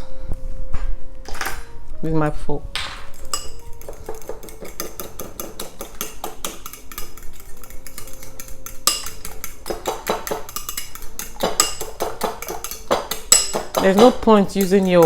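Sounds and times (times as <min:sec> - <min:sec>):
fork clinking in a bowl: 0:03.1 - 0:15.0.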